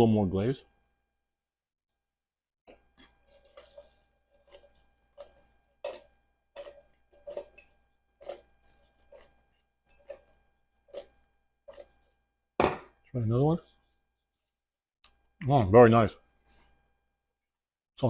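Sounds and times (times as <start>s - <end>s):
utensil scraping vegetables in bowl: 2.8s - 12.2s.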